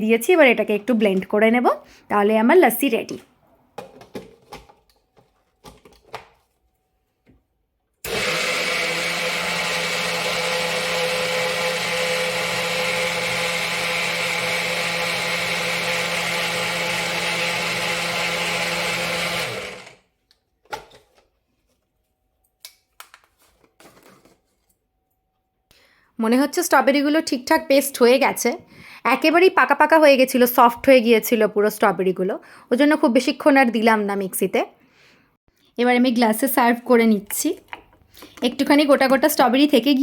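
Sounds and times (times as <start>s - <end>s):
mixer grinder motor blending: 8.0s - 20.1s.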